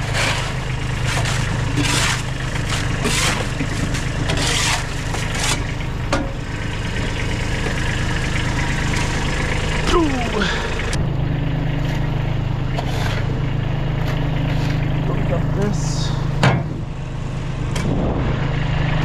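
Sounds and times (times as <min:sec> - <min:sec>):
rough scraping strokes: 0:00.0 - 0:06.0, 0:11.8 - 0:15.5
engine idling: 0:00.0 - 0:19.0.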